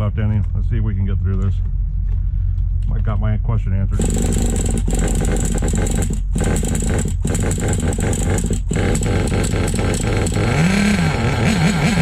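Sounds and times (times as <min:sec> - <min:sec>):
small two-stroke engine revving: 0:04.0 - 0:12.0.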